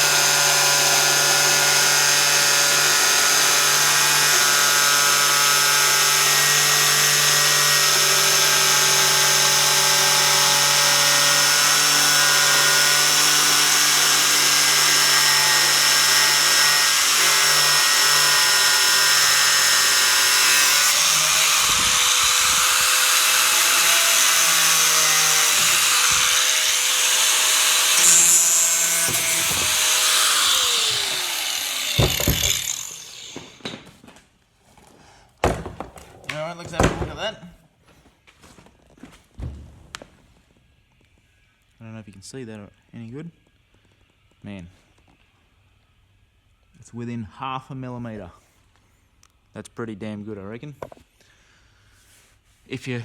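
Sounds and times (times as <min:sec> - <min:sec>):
angle grinder cutting: 0:00.0 - 0:33.8.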